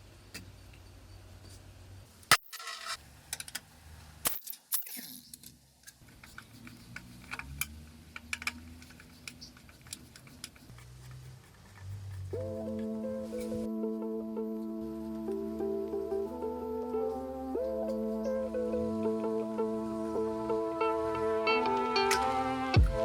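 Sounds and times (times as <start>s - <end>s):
hand tools clicking on metal parts: 2.2s - 12.9s
background music: 12.4s - 23.0s.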